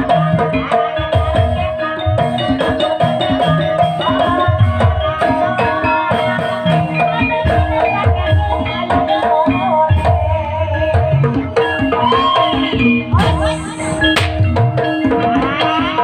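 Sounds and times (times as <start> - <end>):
gamelan music: 0.0 - 16.0
hand drums beating: 0.0 - 16.0.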